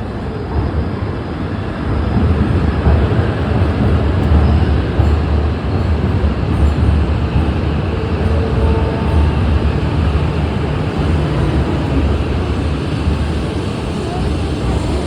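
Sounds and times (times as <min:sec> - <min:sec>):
train arriving with low rumble: 0:00.0 - 0:15.0.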